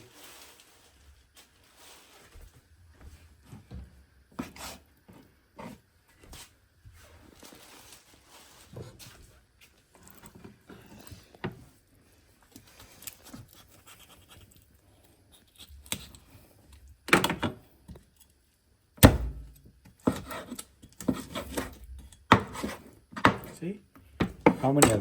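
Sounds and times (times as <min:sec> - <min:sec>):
knife chopping on cutting board: 0:19.0 - 0:23.6, 0:24.2 - 0:25.0.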